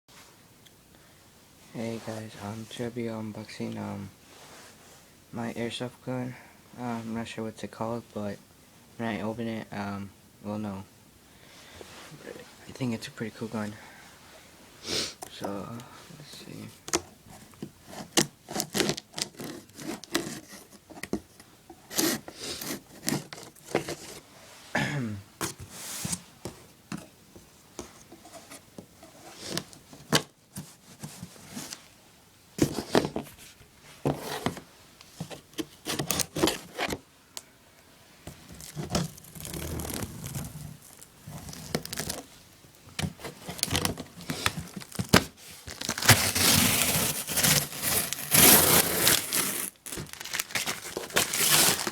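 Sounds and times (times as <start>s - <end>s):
cardboard box being opened: 38.5s - 42.3s, 43.1s - 51.9s
packaging tearing: 38.6s - 42.3s, 43.5s - 51.9s.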